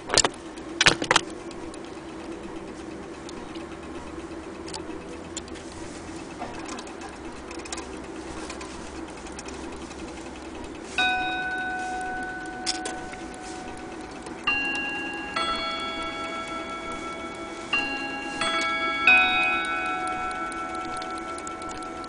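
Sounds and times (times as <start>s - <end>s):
clock ticking: 0.0s - 22.0s
clock chime ringing: 5.6s - 22.0s.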